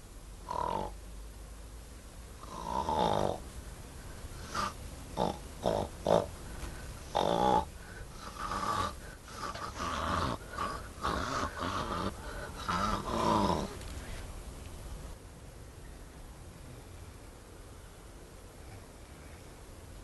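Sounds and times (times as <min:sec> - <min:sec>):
person imitating snoring: 0:02.4 - 0:03.4, 0:04.4 - 0:06.3, 0:07.1 - 0:13.8.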